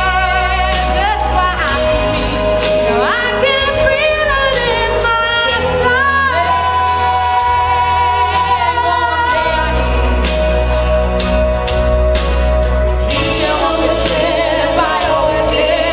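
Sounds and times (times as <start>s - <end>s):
pop song bass and beat: 0.0s - 15.9s.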